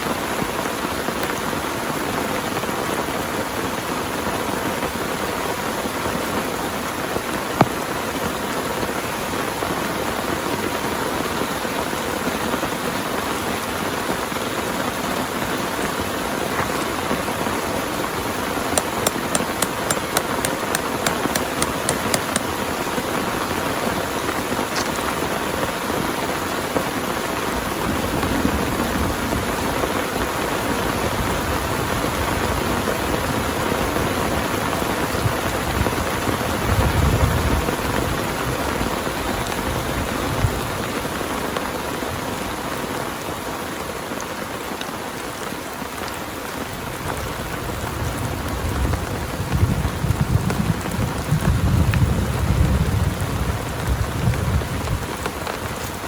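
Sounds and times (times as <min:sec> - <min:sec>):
light ticks: 0:18.8 - 0:22.4
sharp tap: 0:18.8 - 0:22.5
heavy rain falling: 0:42.2 - 0:56.0.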